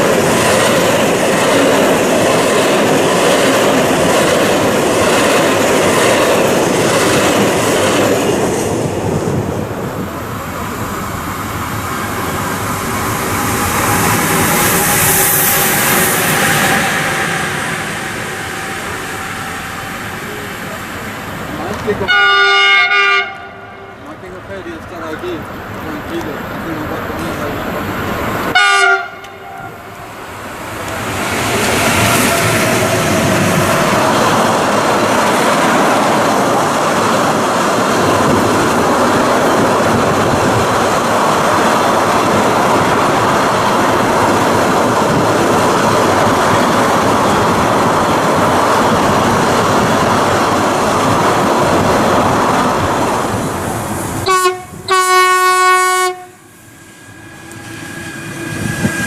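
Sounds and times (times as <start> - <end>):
freight train wheels on rails: 0.0 - 59.0
locomotive horn: 22.0 - 24.0, 28.5 - 29.9, 54.2 - 56.4.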